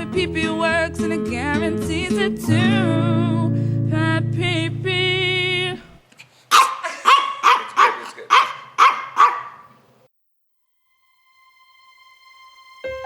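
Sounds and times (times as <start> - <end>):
dog barking: 6.5 - 9.7.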